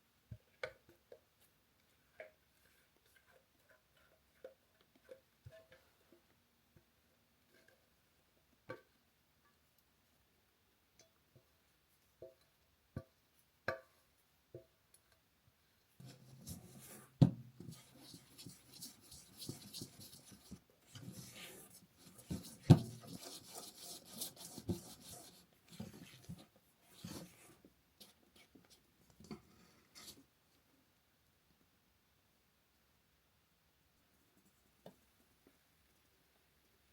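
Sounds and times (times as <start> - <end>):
rubbing and scraping: 16.0 - 28.8.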